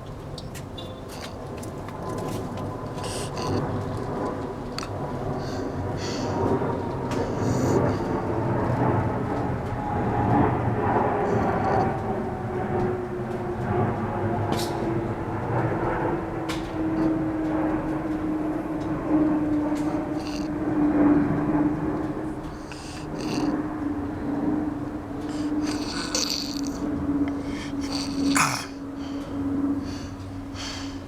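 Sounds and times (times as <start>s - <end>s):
snoring: 3.0s - 4.0s, 4.7s - 6.4s, 7.1s - 8.3s, 11.3s - 11.9s, 19.7s - 20.7s, 22.3s - 28.8s.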